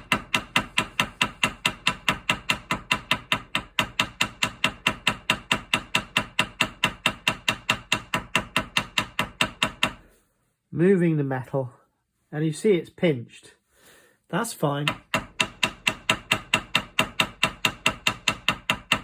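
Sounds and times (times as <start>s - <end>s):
small hammer tapping steel: 0.0s - 10.0s, 14.8s - 19.0s.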